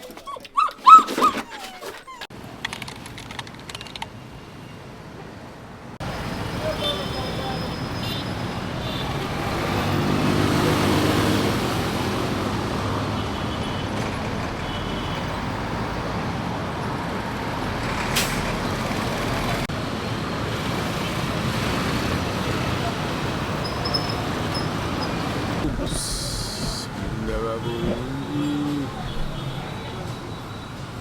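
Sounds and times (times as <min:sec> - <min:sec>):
road traffic noise: 0:00.6 - 0:31.0
vehicle engine passing: 0:09.1 - 0:13.1.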